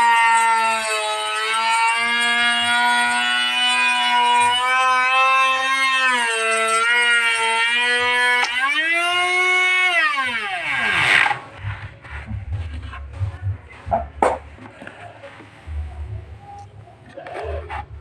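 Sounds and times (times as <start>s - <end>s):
electric motor whining: 0.0s - 12.5s
low rumble: 11.4s - 18.0s
knocks: 11.6s - 14.7s.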